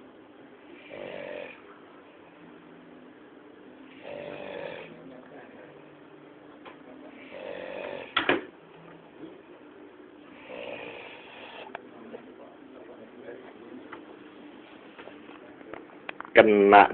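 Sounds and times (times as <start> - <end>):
man snoring loudly: 0.8 - 1.6, 3.9 - 5.0, 7.2 - 8.2, 10.4 - 11.7.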